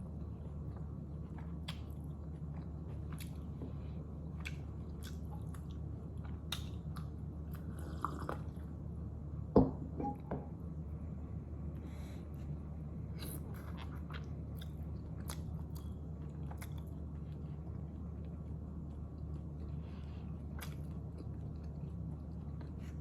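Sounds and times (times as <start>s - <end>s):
low hum: 0.0s - 23.0s
person chewing: 0.7s - 3.5s, 4.4s - 8.6s, 13.2s - 23.0s.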